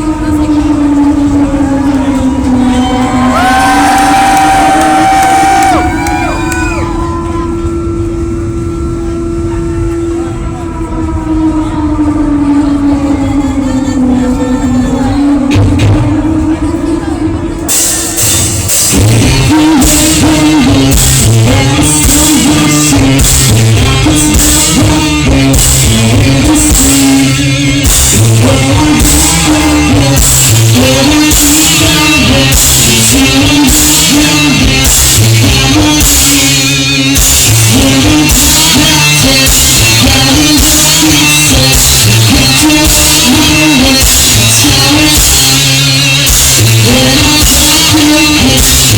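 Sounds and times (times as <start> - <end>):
person singing: 10.5 - 48.9
live rock band: 17.7 - 48.9.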